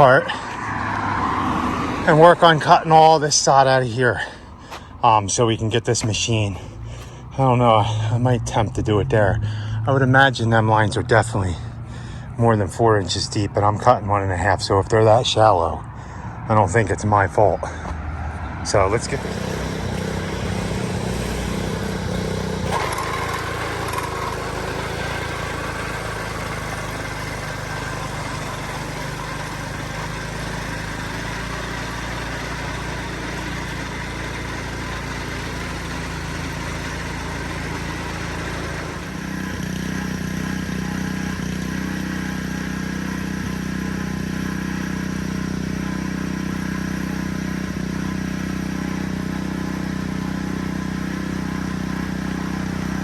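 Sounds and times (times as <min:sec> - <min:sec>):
sod cutter engine running: 0:18.7 - 0:53.0.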